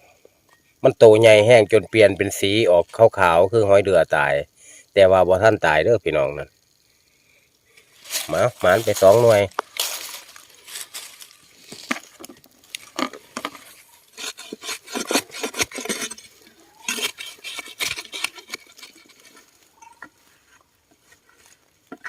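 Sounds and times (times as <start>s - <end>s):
hands scraping soil: 8.0s - 22.0s
small spade digging soil: 8.0s - 22.0s.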